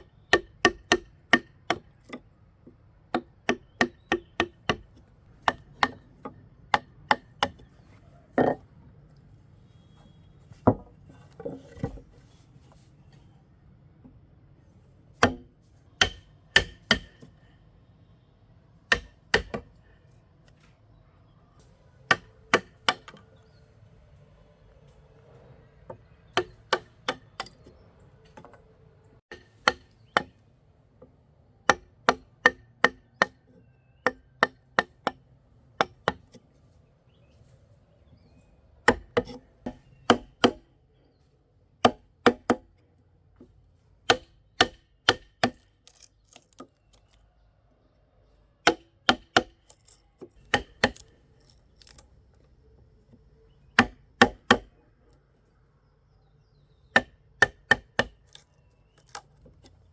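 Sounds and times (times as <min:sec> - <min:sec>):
hand tool striking wood: 0:00.3 - 0:02.2, 0:03.1 - 0:07.7, 0:15.2 - 0:17.3, 0:38.9 - 0:40.6, 0:44.1 - 0:46.7, 0:48.6 - 0:52.0, 0:53.8 - 0:54.7, 0:56.9 - 0:58.4.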